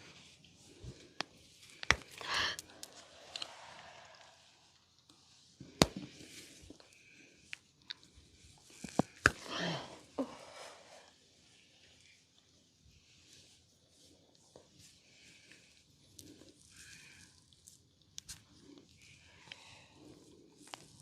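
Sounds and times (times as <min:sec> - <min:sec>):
hands smacking skin: 0:01.7 - 0:03.5, 0:05.8 - 0:06.1, 0:08.8 - 0:09.6.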